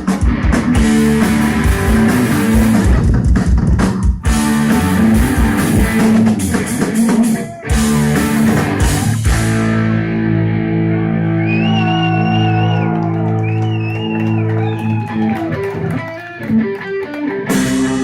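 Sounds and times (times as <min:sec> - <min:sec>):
drum and cymbal hits: 0:00.0 - 0:09.7, 0:17.5 - 0:18.0
distorted electric guitar: 0:00.0 - 0:18.0
lead guitar with vibrato: 0:04.3 - 0:11.4, 0:15.2 - 0:18.0.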